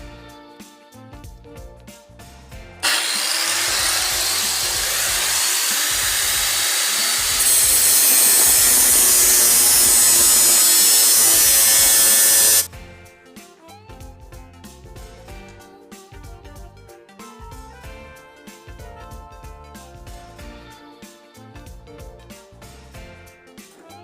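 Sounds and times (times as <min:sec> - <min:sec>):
background music: 0:00.0 - 0:24.0
power tool cutting steel: 0:02.8 - 0:12.7.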